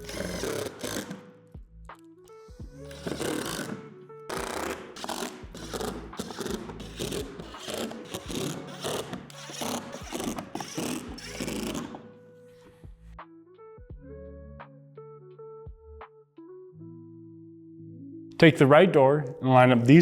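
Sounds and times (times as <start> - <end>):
screw rasping in plastic: 0.0 - 1.3, 2.8 - 12.1.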